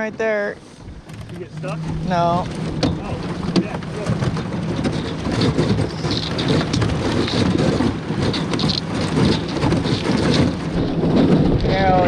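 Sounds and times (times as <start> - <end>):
ice cracking against boat hull: 2.5 - 12.0.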